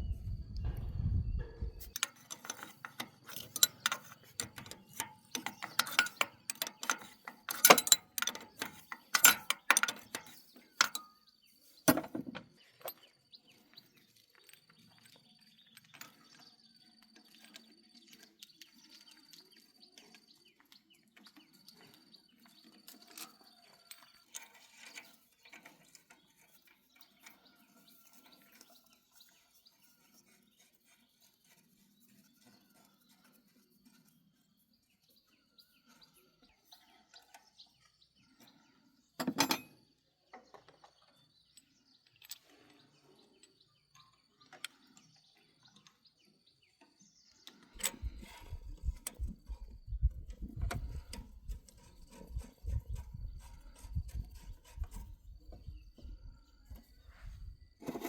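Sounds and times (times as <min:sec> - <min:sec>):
birds chirping: 0:00.0 - 0:23.7.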